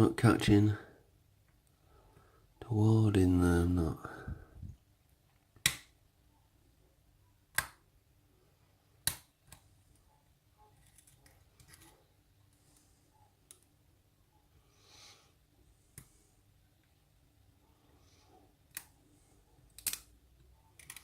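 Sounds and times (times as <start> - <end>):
lock pick metallic clicks: 19.7 - 20.1
lock pick scratching in keyway: 20.7 - 21.0.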